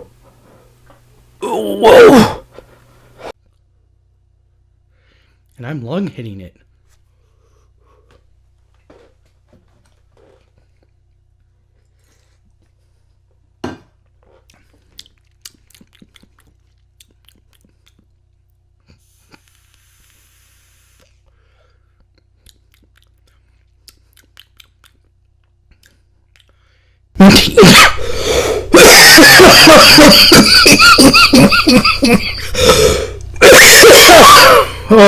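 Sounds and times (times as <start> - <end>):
elderly man coughing: 27.2 - 27.9, 28.7 - 35.0.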